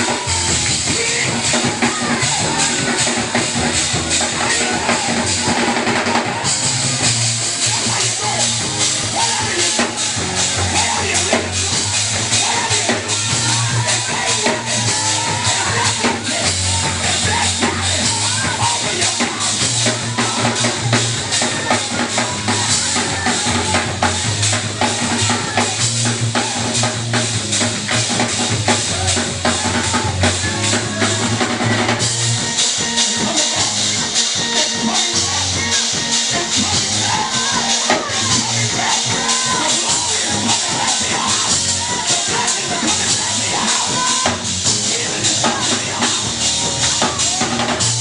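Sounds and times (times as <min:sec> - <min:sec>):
fast drum kit: 0:00.0 - 0:48.0
sustained bass notes: 0:00.0 - 0:48.0.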